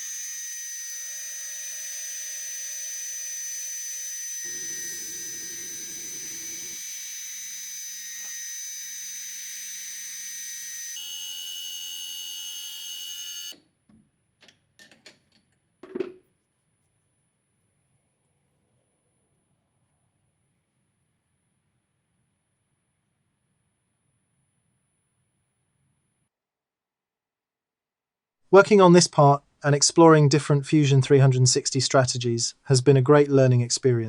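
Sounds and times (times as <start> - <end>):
mill spindle high whine: 0.0 - 13.6.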